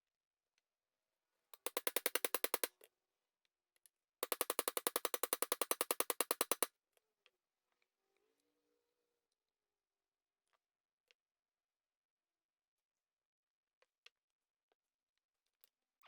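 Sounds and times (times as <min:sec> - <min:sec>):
rapid metallic clicking: 0:01.6 - 0:02.7, 0:04.2 - 0:06.7.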